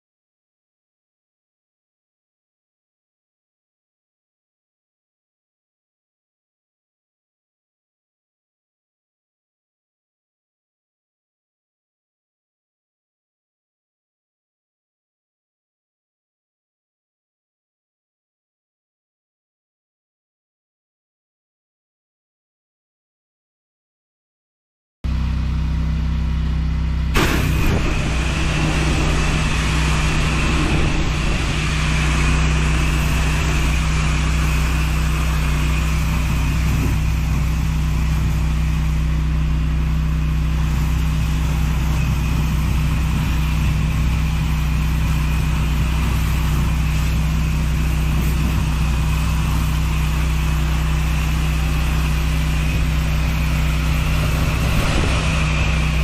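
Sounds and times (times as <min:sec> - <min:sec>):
pressure washer engine hum: 0:25.1 - 0:56.0
water spraying onto paving: 0:27.2 - 0:56.0.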